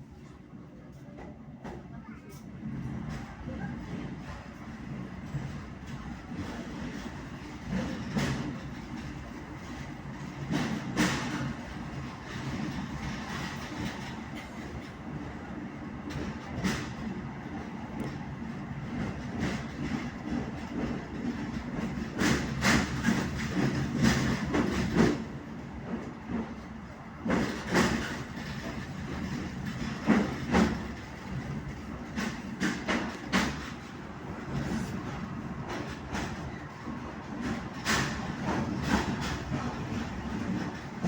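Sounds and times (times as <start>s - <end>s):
train rumbling on rails: 0.0s - 41.0s
wheels clacking and knocking: 3.0s - 15.1s, 17.9s - 41.0s.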